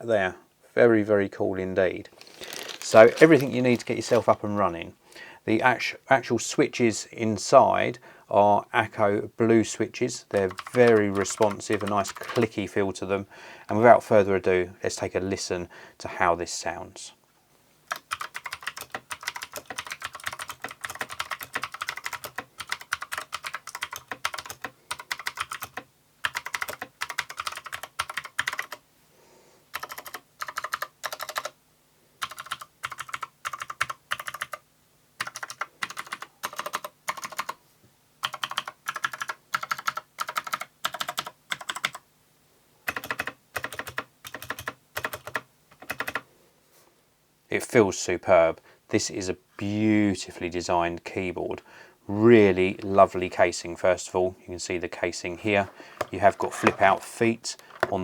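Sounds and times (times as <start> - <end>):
clicky mechanical keyboard typing: 10.4 - 12.6, 17.9 - 28.8, 29.7 - 31.6, 32.2 - 34.6, 35.2 - 37.6, 38.2 - 42.0, 42.9 - 46.2.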